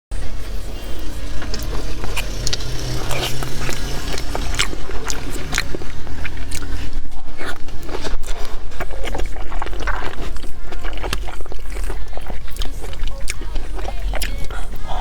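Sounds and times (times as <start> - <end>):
background music: 0.1 - 7.0
crunching of fried food being chewed: 0.4 - 15.0.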